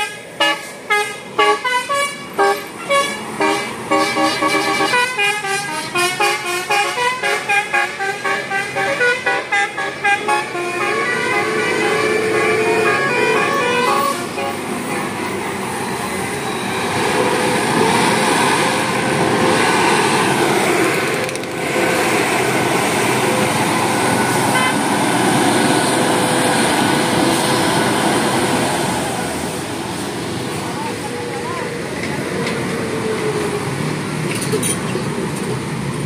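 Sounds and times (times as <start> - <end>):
bus musical horn: 0.0 - 15.6, 23.0 - 25.3
heavy vehicle engine and road noise: 0.0 - 36.0.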